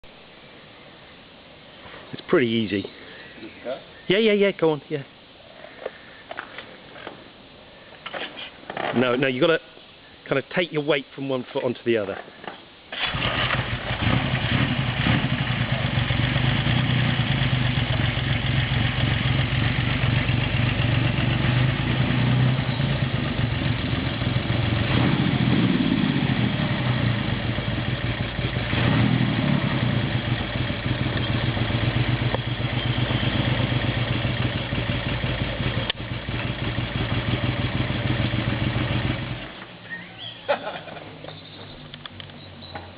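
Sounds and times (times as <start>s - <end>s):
motorcycle engine idling and revving: 13.0s - 39.8s.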